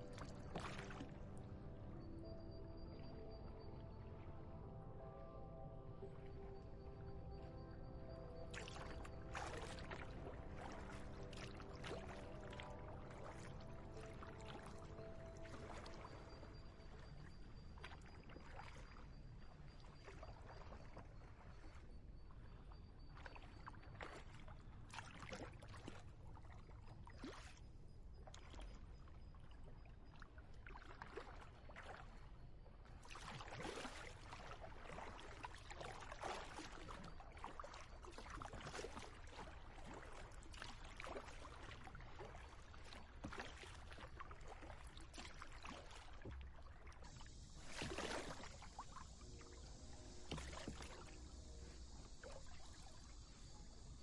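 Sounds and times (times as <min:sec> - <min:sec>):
kayak paddle splashing: 0:00.0 - 0:01.4, 0:08.2 - 0:22.5, 0:30.3 - 0:54.0.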